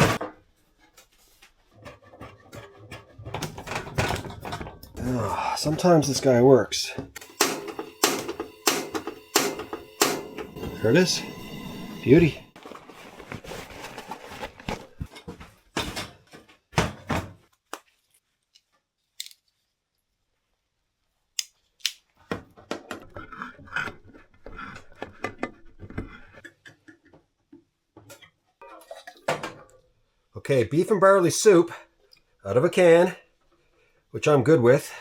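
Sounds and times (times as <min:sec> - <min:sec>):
metal cookware clattering: 0:01.7 - 0:05.0.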